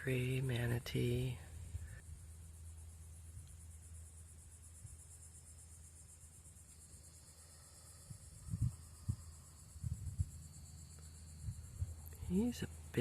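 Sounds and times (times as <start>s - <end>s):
high-pitched insect chorus: 0.0s - 13.0s
dull low bumps: 8.1s - 10.4s.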